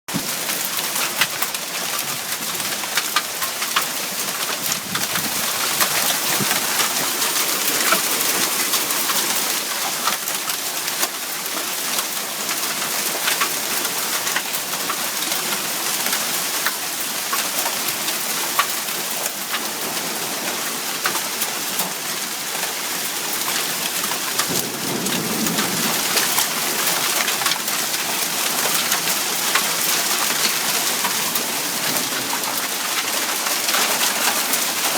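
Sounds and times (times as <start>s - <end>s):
hailstones ticking on surfaces: 0.1s - 34.9s
rain hissing: 3.2s - 11.0s.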